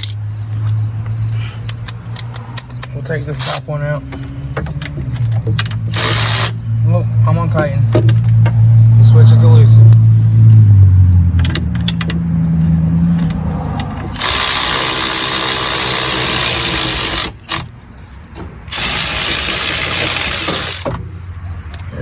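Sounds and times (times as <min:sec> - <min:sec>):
low hum: 0:04.1 - 0:14.6
power tool spinning bolt: 0:04.6 - 0:06.6, 0:13.2 - 0:17.8, 0:18.4 - 0:21.9.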